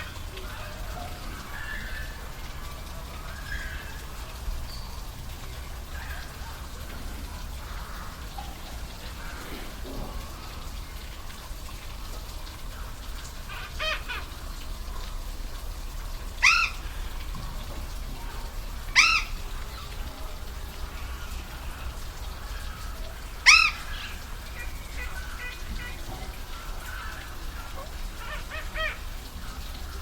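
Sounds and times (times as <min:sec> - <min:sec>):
bird calling: 0:00.0 - 0:05.0, 0:16.4 - 0:17.4, 0:18.9 - 0:20.0, 0:22.4 - 0:30.0
rush of falling water: 0:00.0 - 0:30.0.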